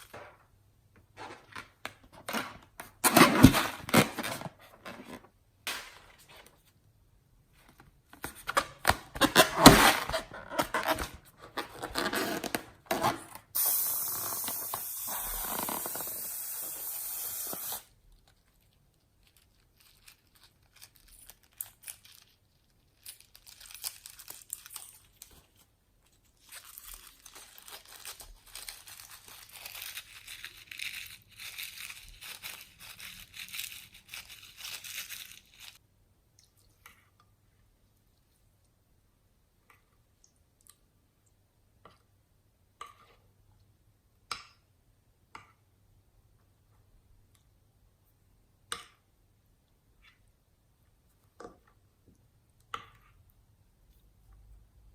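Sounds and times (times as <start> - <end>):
steady hiss: 13.6 - 17.9
hands crinkling slime materials: 17.6 - 35.8.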